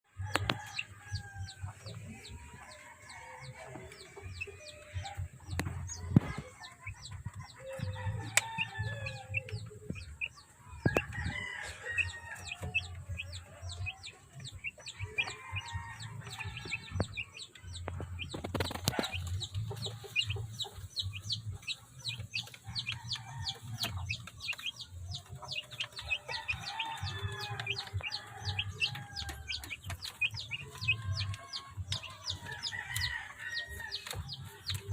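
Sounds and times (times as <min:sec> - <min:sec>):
chickens clucking: 0:00.1 - 0:34.9
rooster crowing: 0:07.6 - 0:09.4, 0:11.0 - 0:12.9, 0:26.1 - 0:29.6, 0:32.5 - 0:34.0.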